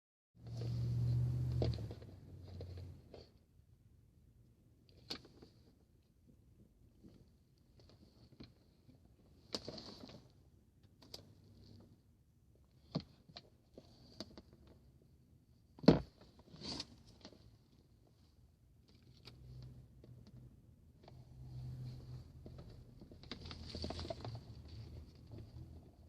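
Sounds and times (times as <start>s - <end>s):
rustling: 21.0s - 26.0s.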